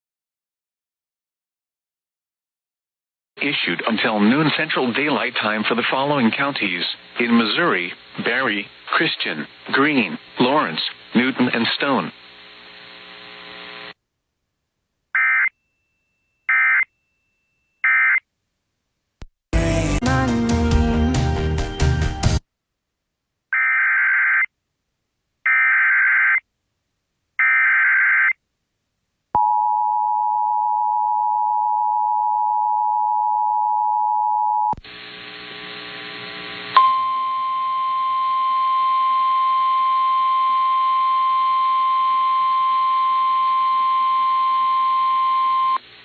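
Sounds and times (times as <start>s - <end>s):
radio hiss: 3.4s - 14.0s, 34.8s - 36.8s.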